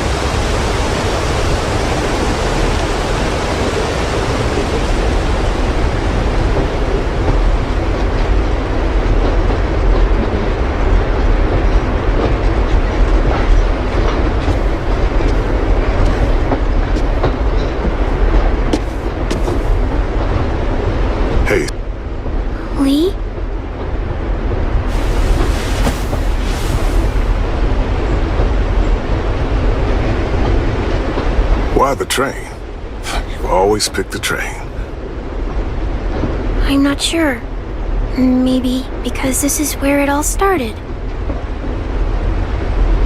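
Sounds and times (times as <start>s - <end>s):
moving train rumbling: 0.0s - 43.0s.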